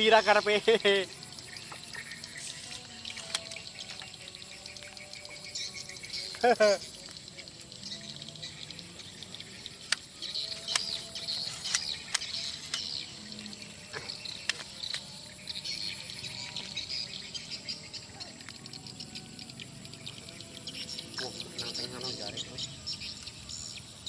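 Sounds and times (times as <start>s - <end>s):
insects chirping: 0.0s - 24.0s
sharp clicks: 3.2s - 3.7s, 9.9s - 13.0s.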